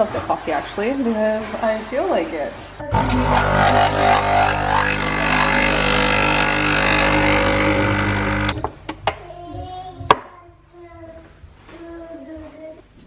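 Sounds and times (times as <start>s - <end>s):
espresso machine pump buzzing: 2.9s - 8.6s.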